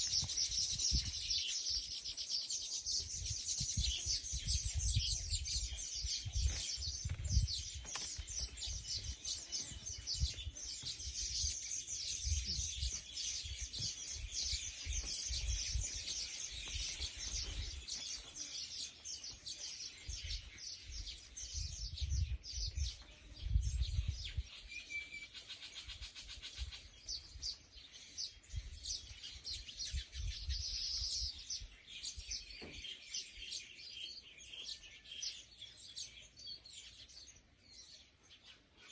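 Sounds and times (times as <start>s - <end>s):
small birds chirping: 0.0s - 38.9s.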